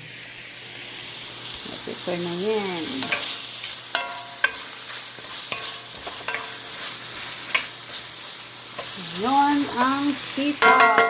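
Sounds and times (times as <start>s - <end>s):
food sizzling in frying pan: 0.0s - 11.0s
utensil knocking against pan: 10.6s - 11.0s.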